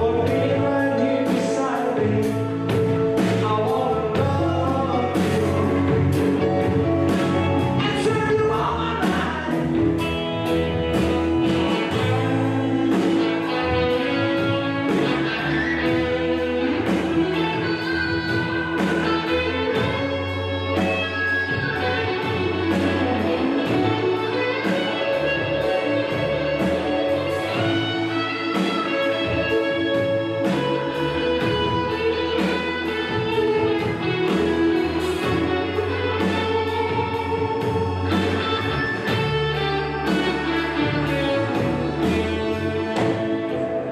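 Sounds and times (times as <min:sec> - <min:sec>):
person singing over a band: 0:00.0 - 0:06.2, 0:07.1 - 0:10.6, 0:40.0 - 0:43.9
steady drum beat: 0:00.0 - 0:43.9.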